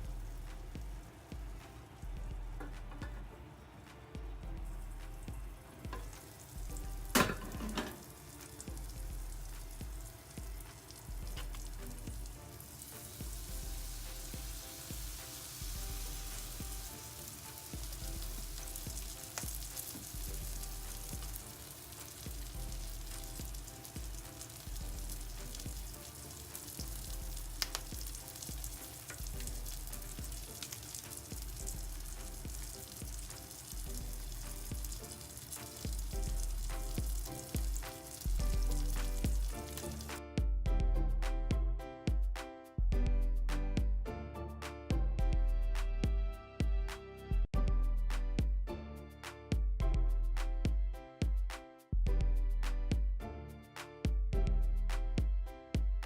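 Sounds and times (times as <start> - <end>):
batter sizzling in a pan: 0.0 - 3.2, 4.6 - 40.2.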